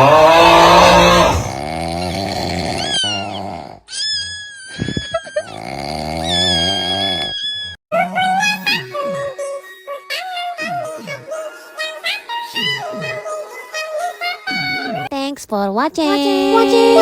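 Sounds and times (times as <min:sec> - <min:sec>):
comedic snoring with whistle: 0:00.0 - 0:09.4.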